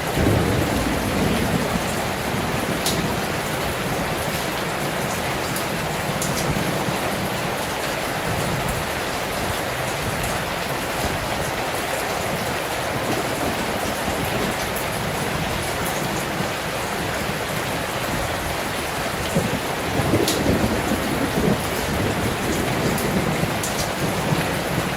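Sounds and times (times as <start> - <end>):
heavy rain: 0.0 - 24.9
rain drop ticks: 0.2 - 7.9, 19.2 - 24.9.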